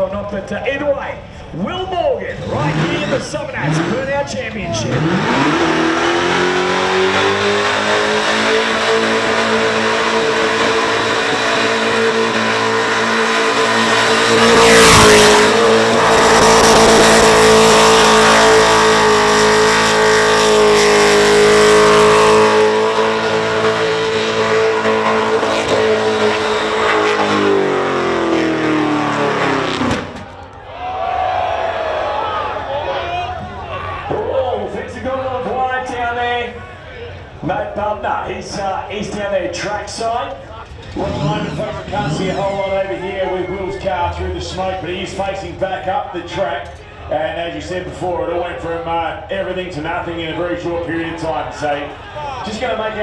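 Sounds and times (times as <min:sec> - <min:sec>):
car engine at full revs: 0:02.3 - 0:30.4, 0:40.3 - 0:46.0
loud engine burst: 0:04.8 - 0:30.4, 0:40.6 - 0:45.6.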